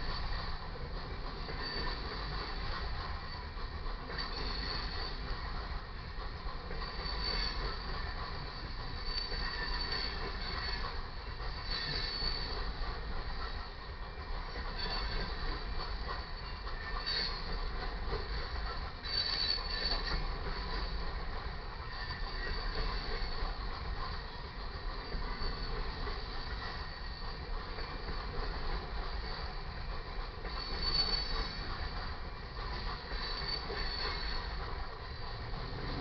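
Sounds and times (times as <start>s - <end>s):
freight train cars rumbling: 0.0s - 36.0s
high-pitched wheel squeal: 6.9s - 7.8s, 9.1s - 10.8s, 11.6s - 12.6s, 14.8s - 15.4s, 19.0s - 20.2s, 30.5s - 31.7s, 33.1s - 34.5s.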